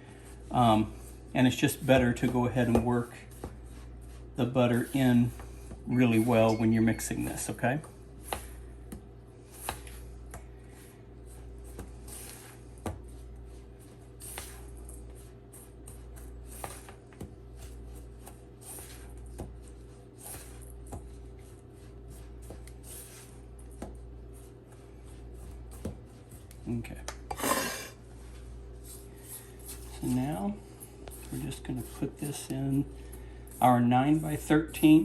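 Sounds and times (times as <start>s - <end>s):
crumbs scraping in mixing bowl: 0.1s - 7.8s.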